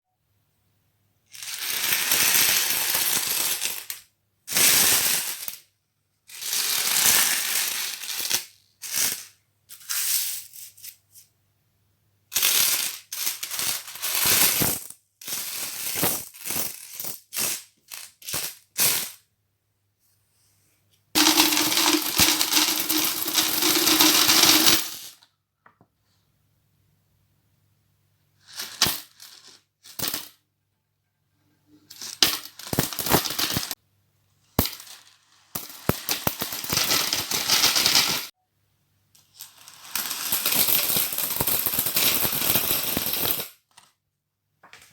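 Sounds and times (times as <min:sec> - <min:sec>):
coins clattering into a bottle: 0:21.2 - 0:25.2, 0:31.9 - 0:33.8, 0:35.6 - 0:38.3, 0:39.4 - 0:43.5.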